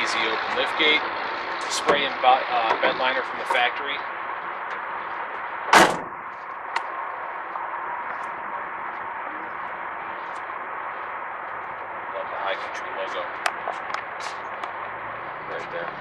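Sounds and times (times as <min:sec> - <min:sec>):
tailgate slamming shut: 0:01.6 - 0:03.1, 0:05.7 - 0:06.3.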